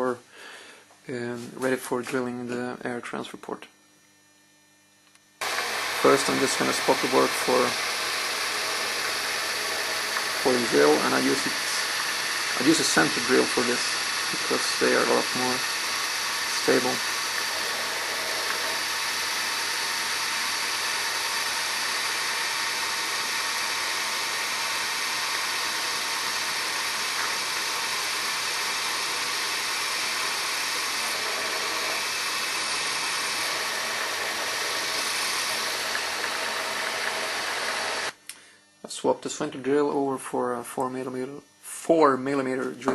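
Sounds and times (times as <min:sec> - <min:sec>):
milling machine spindle running: 0:05.4 - 0:38.2.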